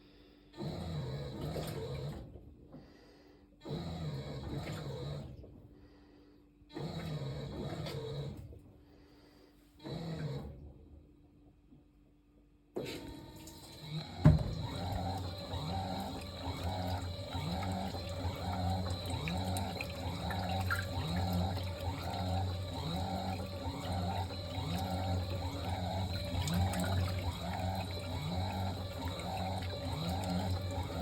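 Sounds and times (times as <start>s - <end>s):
washing machine motor hum: 0.5s - 2.7s, 3.6s - 5.7s, 6.7s - 8.8s, 12.8s - 31.0s
water running into washing machine: 0.6s - 2.3s, 3.8s - 5.4s, 12.9s - 31.0s
washing machine wash action: 0.6s - 2.4s, 3.6s - 5.6s, 6.7s - 8.5s, 12.8s - 31.0s.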